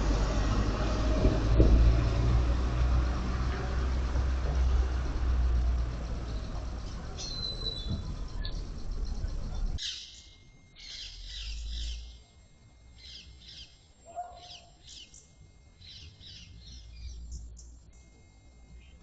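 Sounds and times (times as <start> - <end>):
bird chirping: 6.1 - 18.0.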